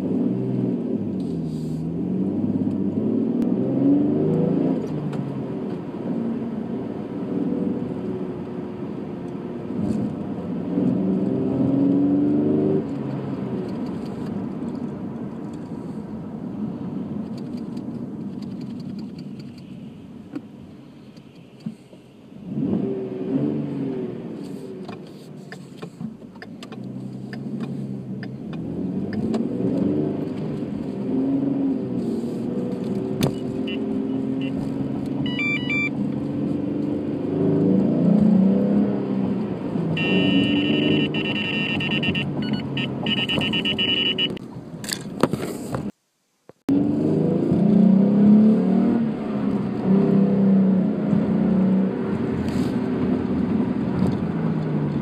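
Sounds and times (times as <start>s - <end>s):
car engine revving: 26.8s - 44.4s.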